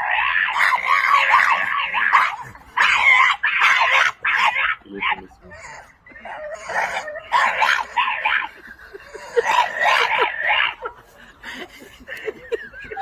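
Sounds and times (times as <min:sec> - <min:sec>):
dog making rough wavering calls: 0:00.0 - 0:10.9.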